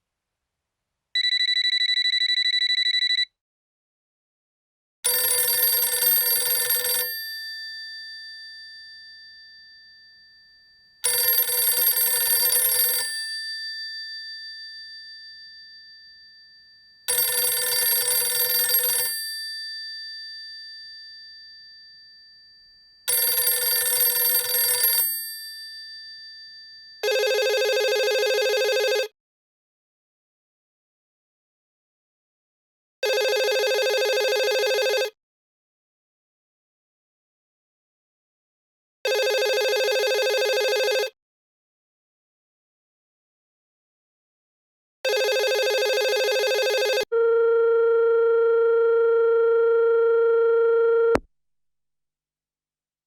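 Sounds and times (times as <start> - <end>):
steady ringtone: 1.2 - 3.3, 5.1 - 29.1, 33.1 - 35.2, 39.1 - 41.1, 45.1 - 47.3
telephone bell ringing: 1.2 - 3.3, 5.1 - 10.4, 11.0 - 29.2, 33.0 - 35.2, 39.1 - 41.2, 45.1 - 51.2.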